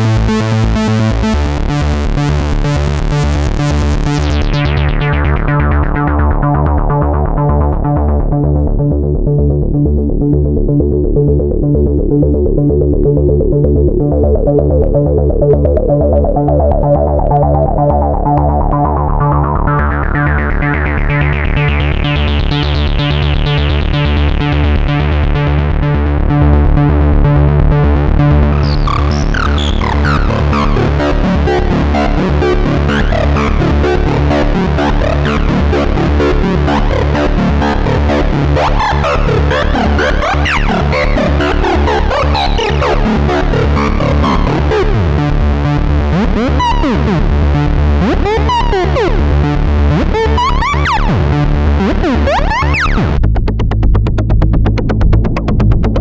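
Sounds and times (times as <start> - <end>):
steady low bass: 0.0 - 56.0
synthesizer repeating note pattern: 12.3 - 56.0.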